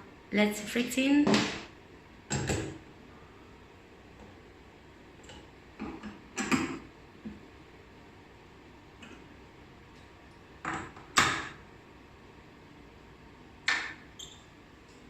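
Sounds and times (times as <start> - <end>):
knocks and clicks of a testing machine: 2.3 - 2.8, 5.2 - 7.4.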